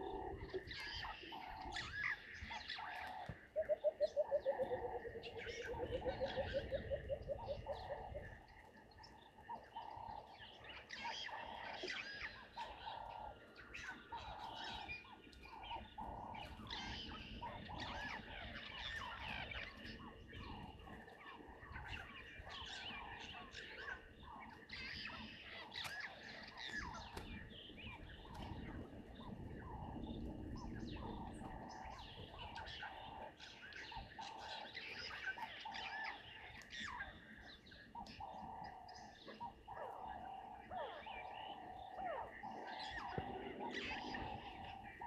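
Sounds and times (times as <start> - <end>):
rhythmic pulsing animal call: 0.0 - 29.9
birds chirping: 0.0 - 45.0.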